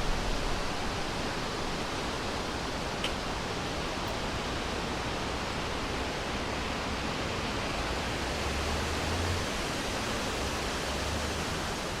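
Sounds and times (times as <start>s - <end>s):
wind rushing through forest: 0.0s - 12.0s.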